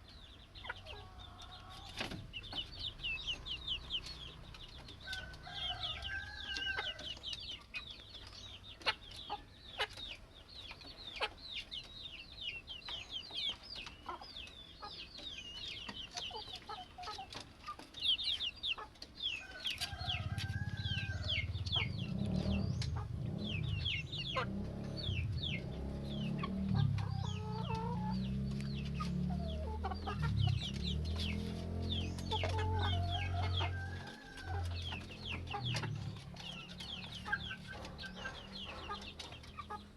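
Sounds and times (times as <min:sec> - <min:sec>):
chicks peeping: 0:00.0 - 0:39.9
hens clucking: 0:00.0 - 0:39.9
low rumble: 0:20.1 - 0:33.2.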